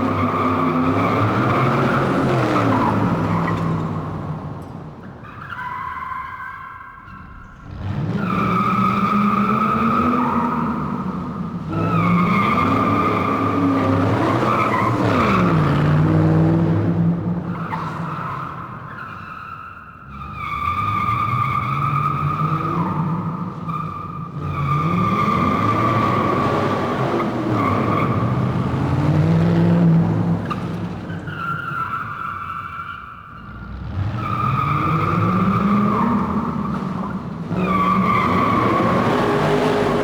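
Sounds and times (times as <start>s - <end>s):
car tyres squealing: 0.0s - 40.0s
car engine revving: 21.9s - 32.0s, 33.4s - 40.0s.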